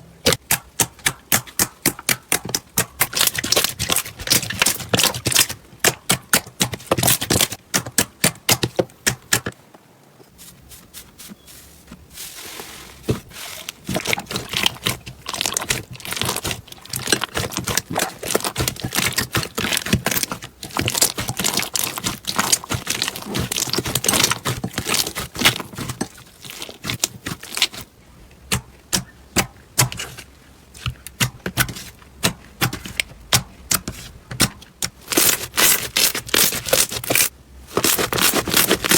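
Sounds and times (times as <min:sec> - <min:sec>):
slime crackling and popping: 0:13.6 - 0:27.8, 0:35.0 - 0:38.9.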